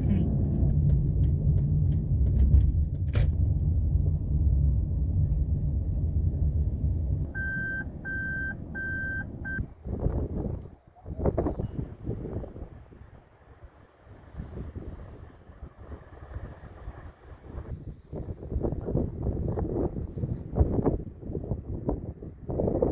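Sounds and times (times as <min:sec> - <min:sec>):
car cabin rumble: 0:00.0 - 0:12.8
wind buffeting microphone: 0:00.0 - 0:22.9
electronic car beeps: 0:07.3 - 0:09.6.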